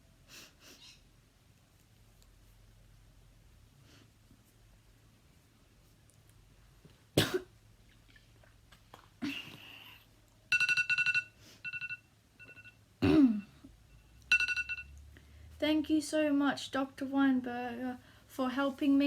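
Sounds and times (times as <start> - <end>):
girl coughing: 7.2 - 7.5, 13.0 - 13.5
electronic alarm beeps: 10.5 - 12.8, 13.4 - 15.0.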